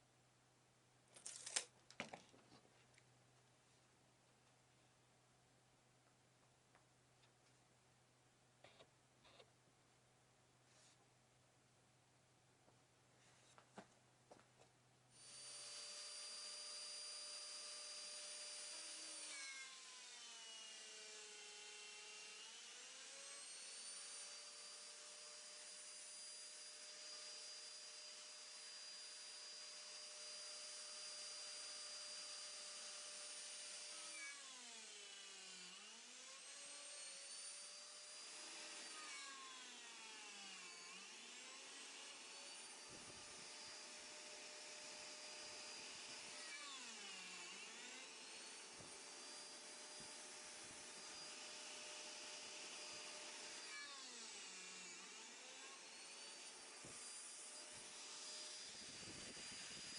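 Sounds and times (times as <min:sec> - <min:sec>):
power tool motor whining: 0:15.2 - 0:59.9.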